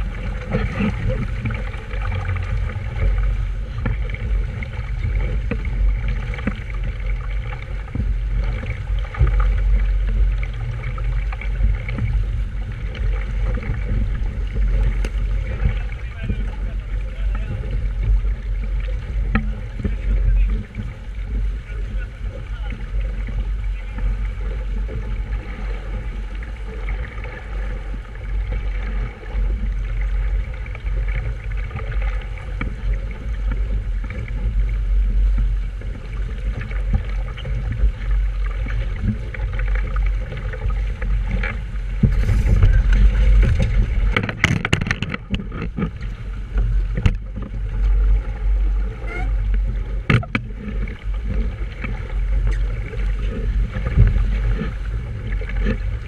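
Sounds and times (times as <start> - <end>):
water sounds: 0.0 - 56.0
wind rumbling on microphone: 0.0 - 56.0
sharp knocks and rattles: 42.0 - 46.0.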